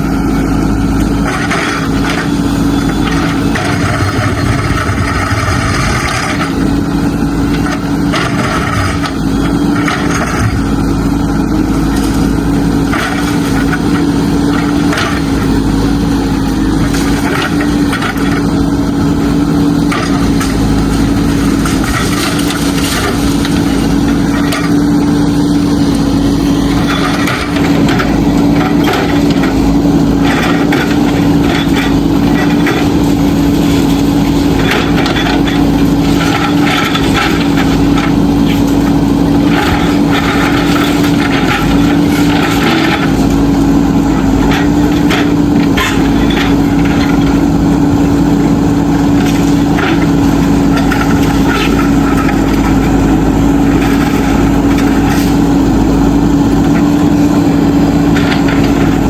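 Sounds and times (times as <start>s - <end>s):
diesel engine under load: 0.0s - 59.0s
rubble cracking and knocking: 19.9s - 24.9s.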